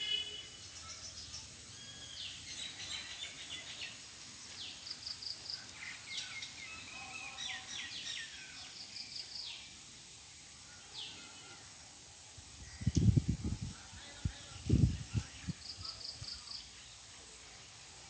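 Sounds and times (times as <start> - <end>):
steady high hiss: 0.0 - 18.0
small birds chirping: 12.5 - 17.8.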